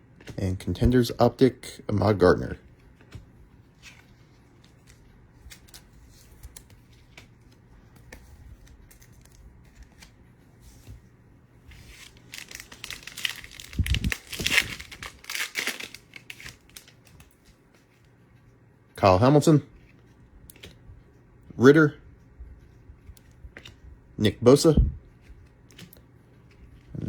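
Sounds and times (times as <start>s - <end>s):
foil wrapper tearing and crinkling: 11.8s - 17.2s.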